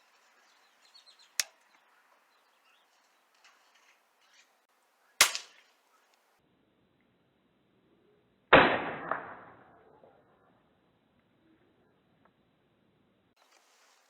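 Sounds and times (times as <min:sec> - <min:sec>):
air rifle shot: 0:05.2 - 0:05.6, 0:08.5 - 0:09.6.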